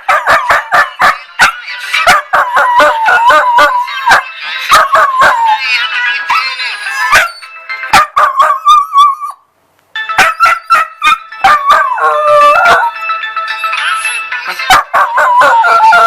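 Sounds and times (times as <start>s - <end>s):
dog howling and yelping: 0.0s - 5.7s, 6.3s - 9.4s, 10.2s - 13.0s, 13.6s - 16.0s.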